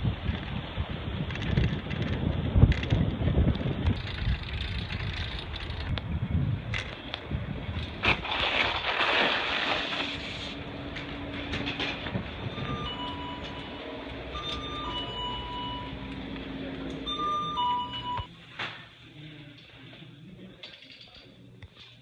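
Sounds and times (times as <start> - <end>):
wind noise: 0.0 - 13.6.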